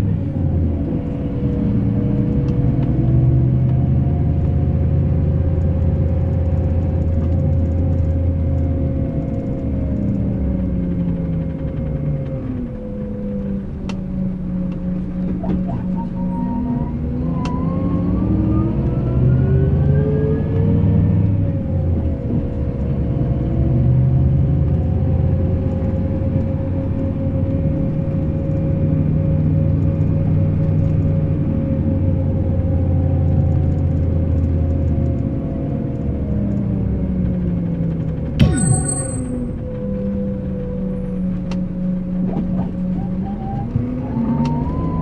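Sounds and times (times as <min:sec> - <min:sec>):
steady whine: 0:38.4 - 0:40.4.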